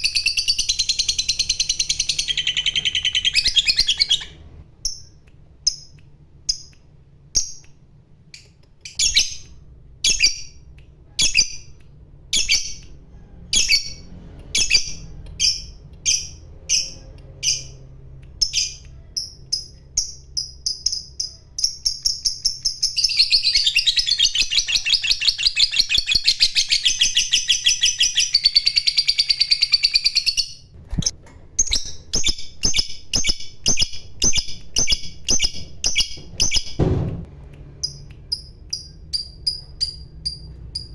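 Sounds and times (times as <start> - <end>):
lovebird chirping and trilling: 0.0 - 7.7, 8.3 - 36.8, 37.8 - 40.9.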